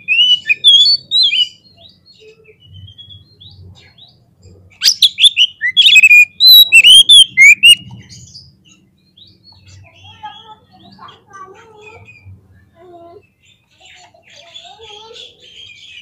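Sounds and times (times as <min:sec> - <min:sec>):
bird calling with whistled notes: 0:00.0 - 0:04.2, 0:04.8 - 0:10.4.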